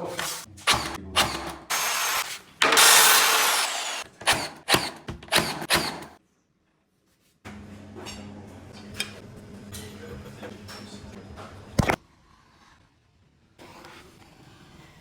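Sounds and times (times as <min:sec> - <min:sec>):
power tool running: 0:01.7 - 0:06.1.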